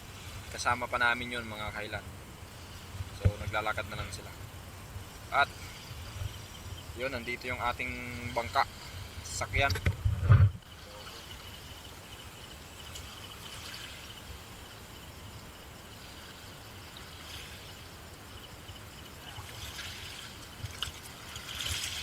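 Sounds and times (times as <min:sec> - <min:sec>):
seawater lapping: 0:10.6 - 0:22.0.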